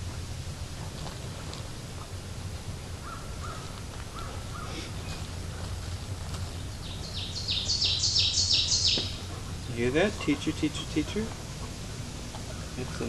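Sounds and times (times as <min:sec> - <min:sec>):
steady low hum: 0:00.0 - 0:13.0
faint short bird calls: 0:03.0 - 0:05.3, 0:07.0 - 0:09.2
bird singing repeated phrases: 0:06.5 - 0:11.2, 0:12.5 - 0:13.0.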